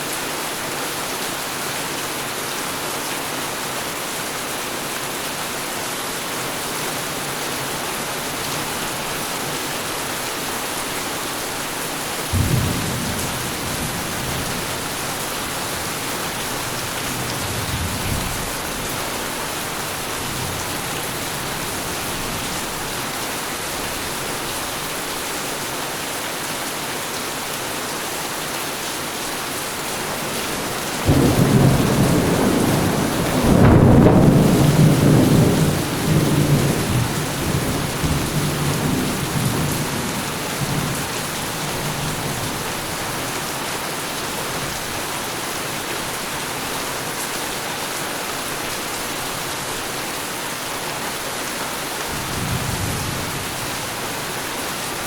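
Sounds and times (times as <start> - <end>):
heavy rain falling: 0.0 - 55.0
thunder clap rumbling: 12.3 - 19.4, 29.9 - 41.1.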